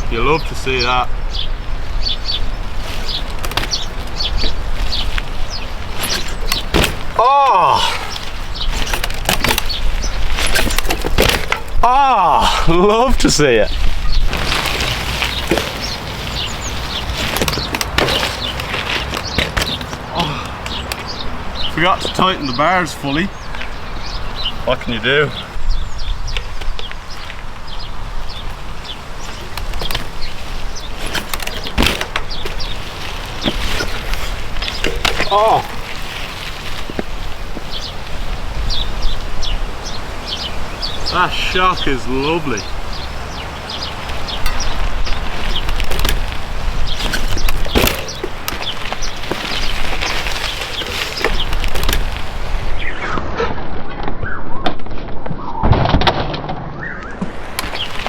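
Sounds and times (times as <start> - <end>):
bike tyres rolling: 0.0 - 54.2, 56.0 - 58.0.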